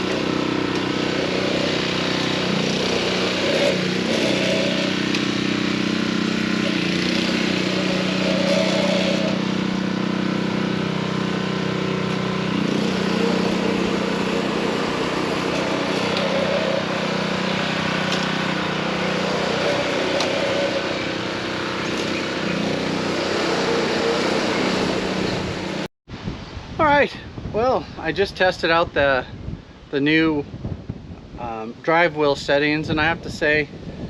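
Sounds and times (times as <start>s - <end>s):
mower gas engine running: 0.0s - 25.9s.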